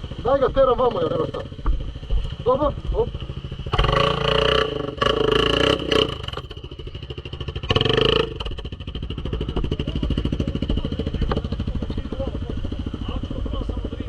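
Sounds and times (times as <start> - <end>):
atv engine revving and idling: 0.0 - 14.0.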